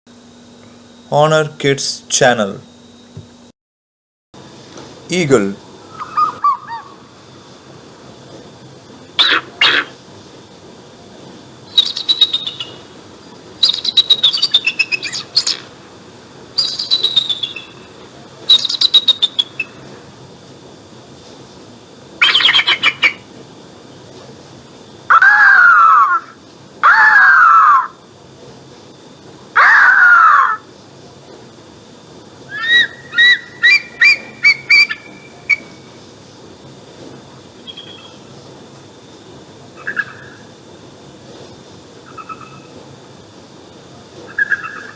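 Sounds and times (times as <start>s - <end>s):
eagle chittering calls: 5.2s - 6.8s
eagle screeching: 5.9s - 6.8s, 29.6s - 30.6s.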